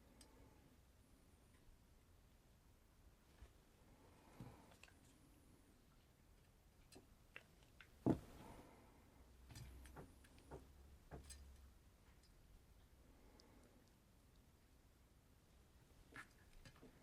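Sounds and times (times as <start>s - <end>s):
tools clicking and tapping: 9.5s - 12.4s.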